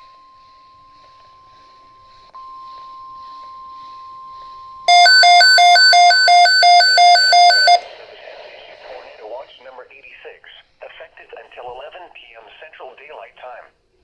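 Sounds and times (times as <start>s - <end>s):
alternating electronic beeping: 4.9s - 7.8s
steady warning alarm tone: 4.9s - 7.8s.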